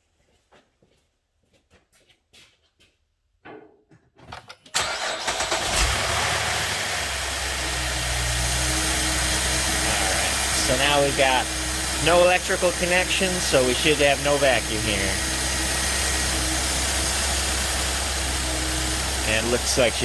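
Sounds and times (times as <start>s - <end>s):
car engine starting and idling: 4.7s - 20.0s.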